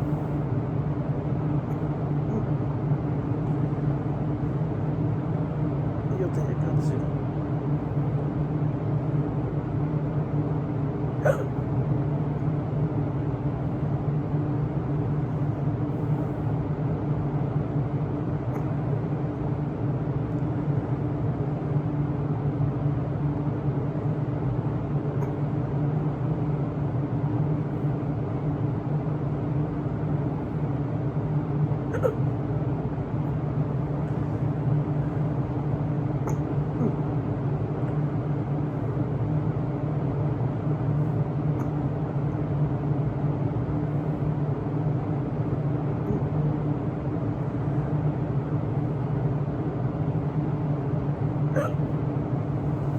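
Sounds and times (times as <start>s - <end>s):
electric fan humming: 0.0s - 9.2s
person hiccuping: 11.2s - 11.6s, 31.9s - 32.3s, 36.3s - 37.0s, 51.5s - 51.9s.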